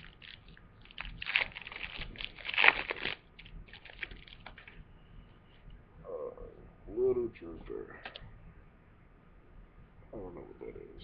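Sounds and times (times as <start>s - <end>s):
foil wrapper tearing and crinkling: 0.0s - 4.8s.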